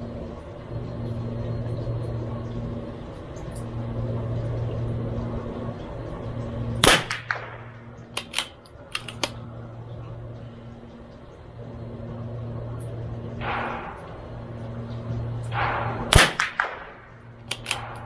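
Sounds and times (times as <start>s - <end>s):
low hum: 0.0s - 18.0s
rifle shot: 6.8s - 9.3s, 15.5s - 18.0s
rifle bolt metallic clicks: 8.2s - 9.4s, 17.4s - 18.0s.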